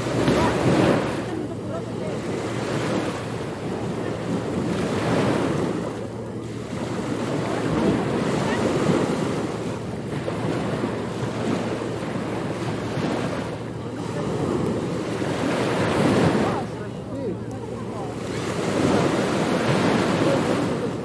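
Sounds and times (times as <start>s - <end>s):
ocean waves breaking on beach: 0.0s - 21.0s.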